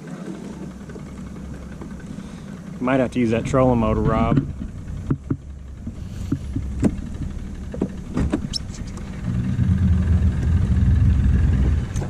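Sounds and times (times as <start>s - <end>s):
boat motor running: 0.0s - 12.0s
knocks and clicks on boat: 3.4s - 9.1s.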